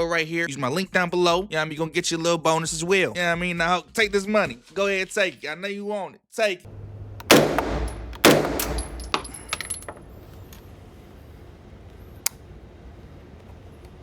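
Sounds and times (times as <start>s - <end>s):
low steady hum: 6.7s - 14.0s
loud gunshot with echo: 7.3s - 9.0s
light metallic clinks: 7.6s - 10.6s.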